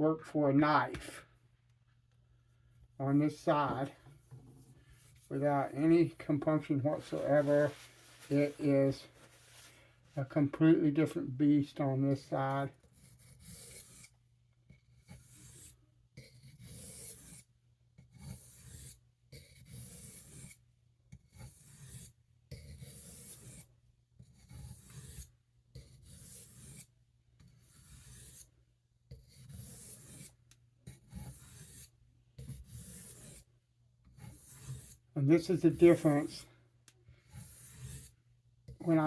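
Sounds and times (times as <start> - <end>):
knife scraping on whetstone: 12.9 - 14.1, 15.0 - 17.5, 18.1 - 20.6, 21.3 - 28.5, 29.1 - 33.5, 34.1 - 36.5, 37.2 - 38.8.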